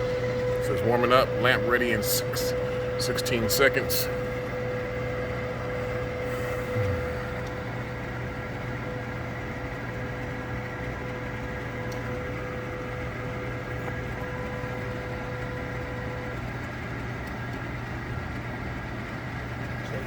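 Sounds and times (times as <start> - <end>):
electrical hum: 0.0 - 20.0
projector fan noise: 0.0 - 20.0
steady mid-pitched tone: 6.2 - 7.5.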